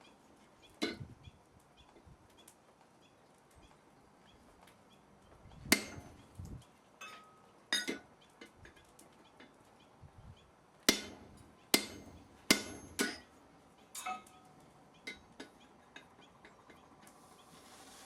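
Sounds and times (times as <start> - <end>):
hammer striking metal on anvil: 5.7 - 6.2, 10.9 - 13.4.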